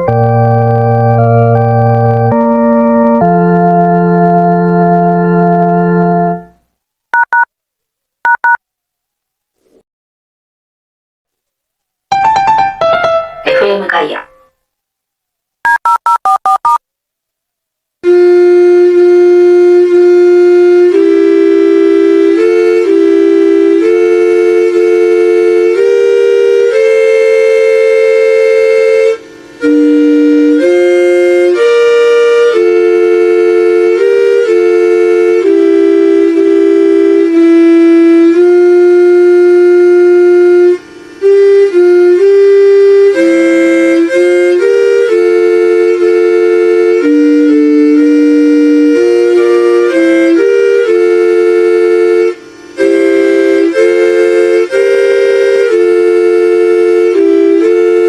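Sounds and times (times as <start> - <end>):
electronic chime melody: 12.1 - 13.6.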